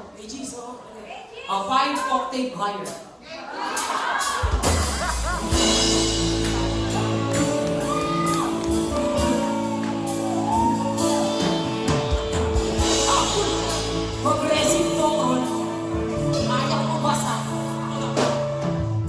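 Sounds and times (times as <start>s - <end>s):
sustained music chords: 4.9s - 19.0s
person singing: 6.8s - 18.9s.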